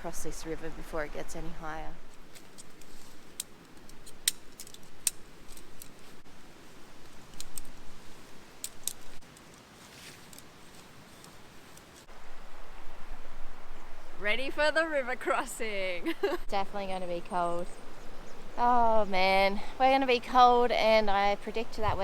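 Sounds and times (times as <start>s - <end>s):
gear rustling: 2.0s - 12.1s
sharp clicks and light rattles: 2.4s - 6.0s, 7.2s - 7.8s.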